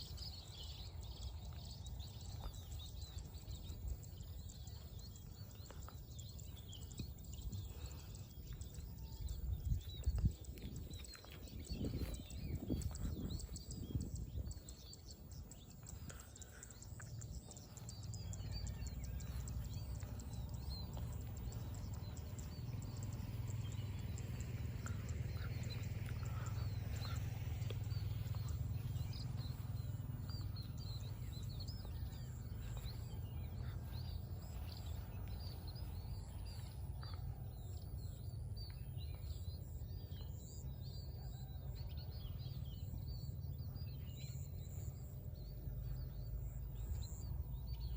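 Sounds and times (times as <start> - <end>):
small birds chirping: 0.0 - 47.9
steady low rumble: 0.0 - 47.9.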